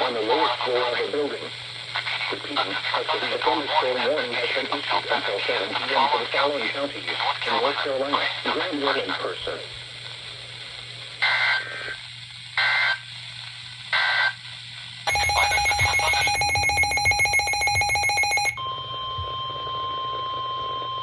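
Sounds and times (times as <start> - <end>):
digital data tone bursts: 15.1 - 18.6
harsh pulsing alert sound: 15.1 - 18.6
steady warning alarm tone: 15.1 - 21.0.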